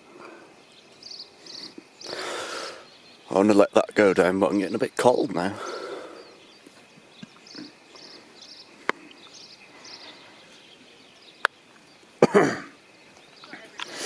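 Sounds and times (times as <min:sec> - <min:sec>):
small bird chirping: 0:00.2 - 0:14.0
man coughing: 0:12.2 - 0:12.7.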